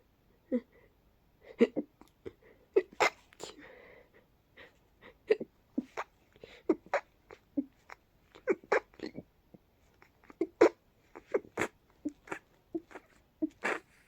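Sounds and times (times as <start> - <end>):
person hiccuping: 2.8 - 3.6, 6.7 - 9.3, 10.2 - 14.0.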